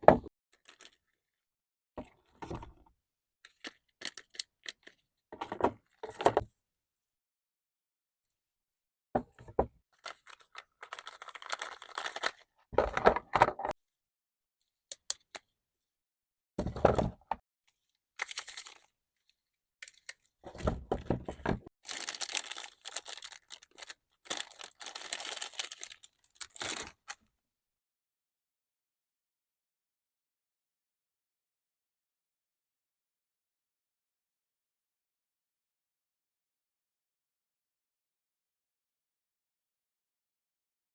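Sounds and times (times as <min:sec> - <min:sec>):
candy wrapper crinkling: 0:00.6 - 0:01.0, 0:03.5 - 0:05.0, 0:10.0 - 0:12.5, 0:18.2 - 0:18.9, 0:19.8 - 0:20.3, 0:21.8 - 0:27.2.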